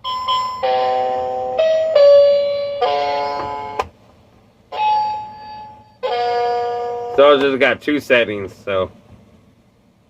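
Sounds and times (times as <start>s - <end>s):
electronic keyboard notes and chords: 0.6s - 3.9s.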